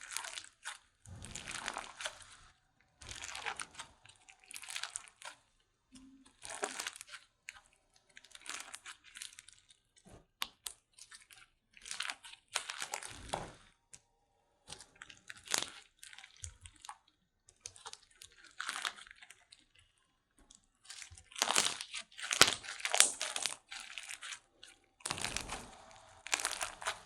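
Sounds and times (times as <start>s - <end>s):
slime crackling and popping: 0.0s - 9.8s, 10.4s - 13.5s, 14.6s - 20.0s, 20.8s - 27.0s.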